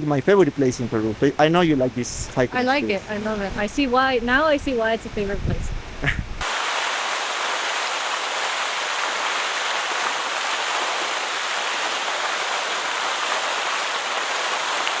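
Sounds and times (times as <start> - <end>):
falling water hiss: 6.4 - 15.0.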